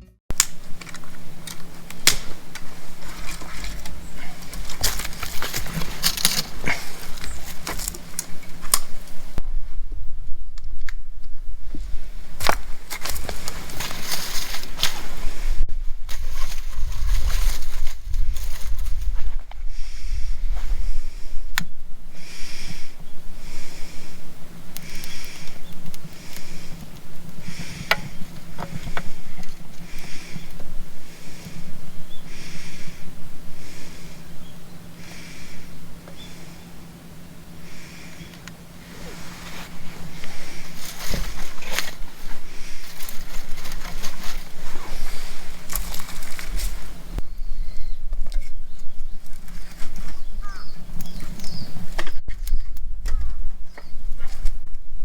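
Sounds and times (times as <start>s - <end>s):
steady low hum: 0.0s - 55.0s
steady low rumble: 0.0s - 55.0s
small birds chirping: 0.6s - 9.4s, 19.7s - 54.4s.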